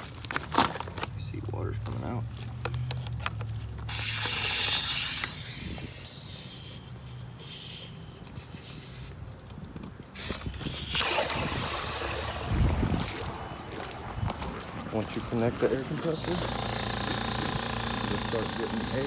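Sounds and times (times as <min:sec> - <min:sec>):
air and water spraying hiss: 0:03.9 - 0:09.2, 0:10.2 - 0:19.0.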